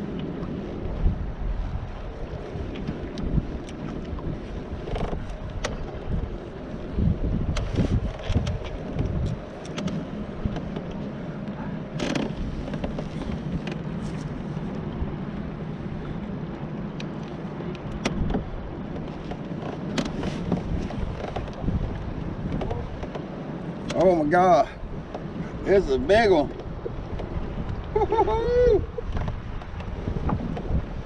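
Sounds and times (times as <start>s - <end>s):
wind buffeting microphone: 0.0s - 31.0s
small knocks and clicks: 7.5s - 11.0s, 19.0s - 21.6s.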